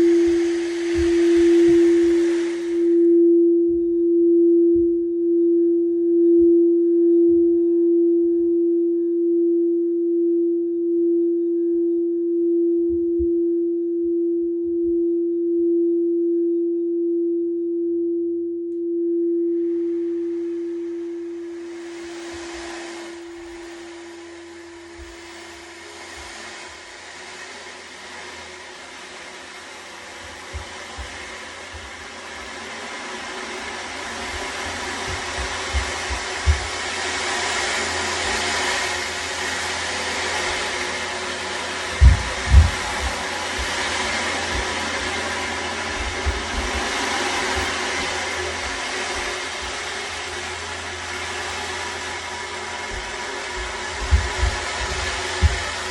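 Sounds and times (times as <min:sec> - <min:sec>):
singing bowl tone: 0:00.0 - 0:37.1
footsteps thumping on floor above: 0:34.4 - 0:36.8, 0:42.0 - 0:43.9, 0:52.8 - 0:55.9.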